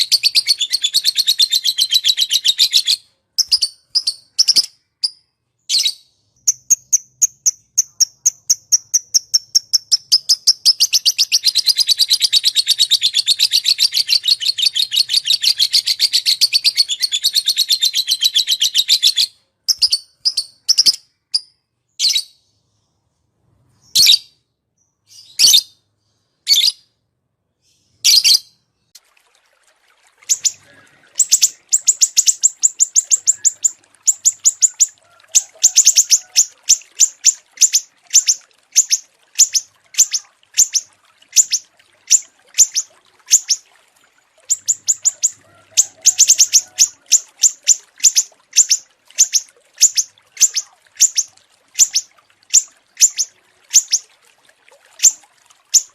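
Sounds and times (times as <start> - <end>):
songbird dry trills: 30.3 - 43.6.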